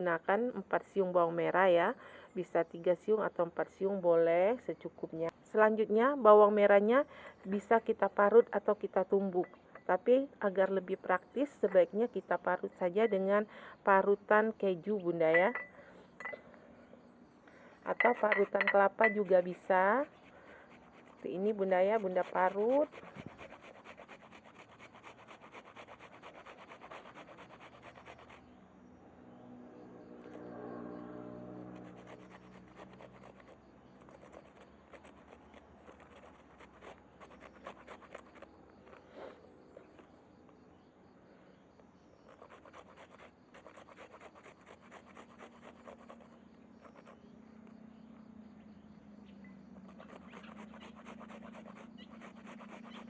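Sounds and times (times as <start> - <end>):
shallots rasping on hand grater: 18.0 - 28.4, 49.9 - 53.0.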